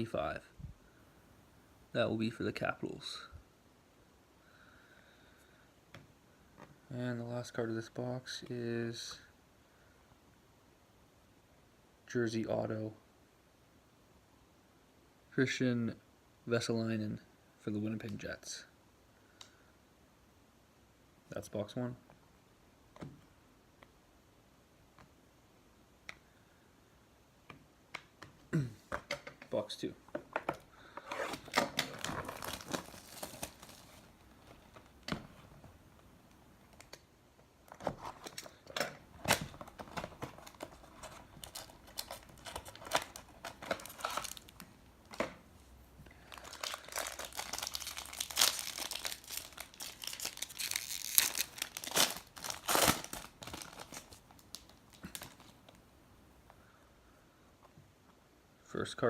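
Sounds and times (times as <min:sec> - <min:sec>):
plastic wrapping crinkling and tearing: 0:31.0 - 0:35.0, 0:37.7 - 0:45.2, 0:46.2 - 0:55.8.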